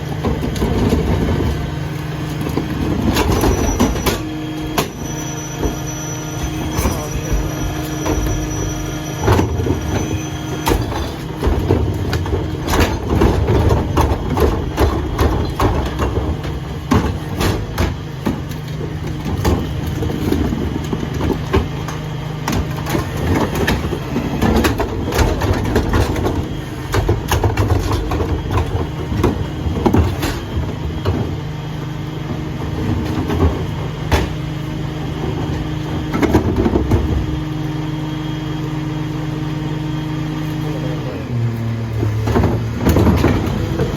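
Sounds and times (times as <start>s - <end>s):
garbage truck engine hum: 0.0s - 43.9s
metal clanks and knocks: 2.3s - 31.4s, 42.0s - 43.9s.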